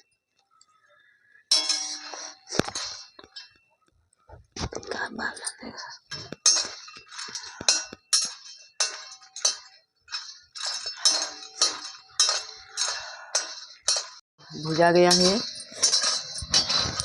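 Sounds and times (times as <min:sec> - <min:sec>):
metal spatula scraping a pan: 0:06.2 - 0:14.2, 0:14.8 - 0:17.0.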